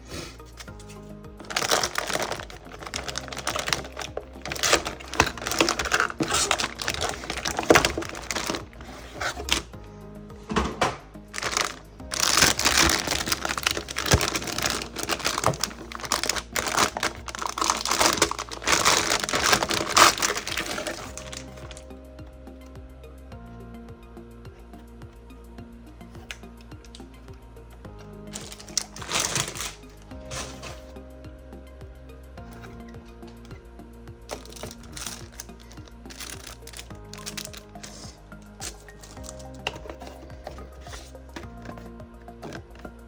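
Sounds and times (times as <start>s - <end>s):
cardboard and plastic packaging handled: 0.0s - 21.9s, 27.9s - 31.0s, 34.3s - 43.0s
background music: 0.0s - 43.0s.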